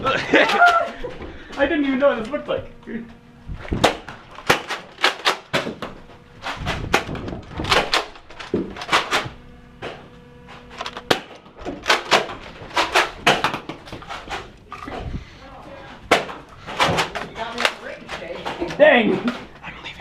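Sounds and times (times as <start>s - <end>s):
sharp knocks and clatters: 3.7s - 10.0s, 10.6s - 15.1s.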